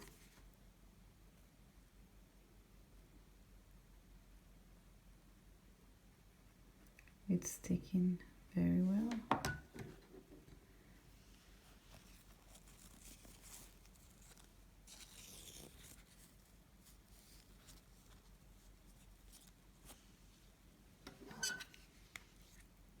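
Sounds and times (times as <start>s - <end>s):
fabric and ribbon rustling: 11.1s - 20.6s.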